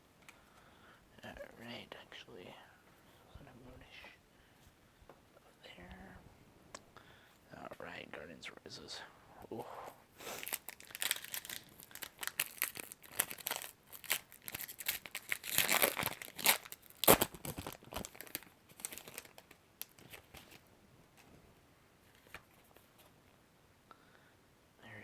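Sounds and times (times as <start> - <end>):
foil wrapper tearing and crinkling: 10.4 - 20.6.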